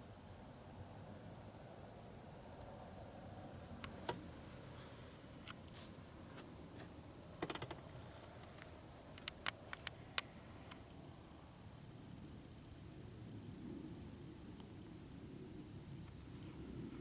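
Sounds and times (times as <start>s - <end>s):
sharp clicks: 8.6s - 10.9s.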